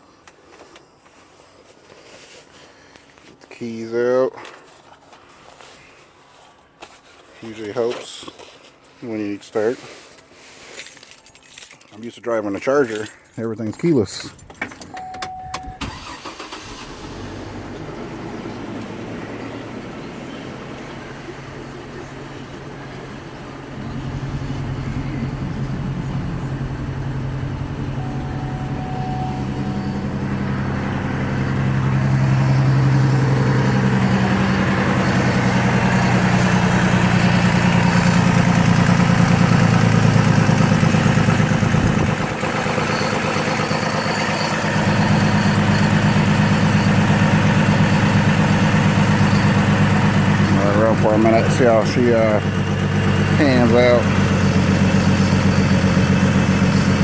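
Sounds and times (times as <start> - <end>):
car engine rough idle: 15.8 - 57.0.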